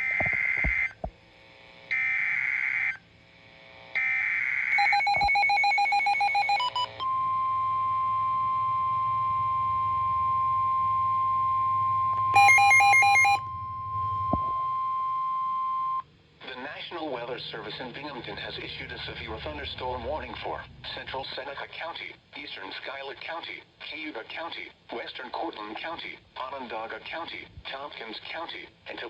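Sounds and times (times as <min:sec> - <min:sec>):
steady alarm tone: 0:04.0 - 0:16.0
pulsing alert beeps: 0:12.4 - 0:14.5.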